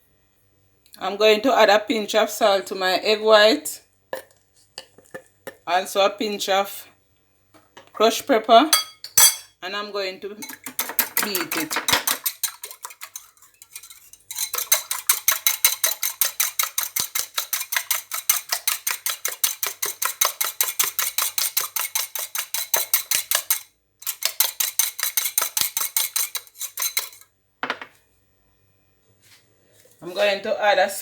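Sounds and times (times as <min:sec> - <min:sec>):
whisk clicking against bowl: 0:10.4 - 0:27.2.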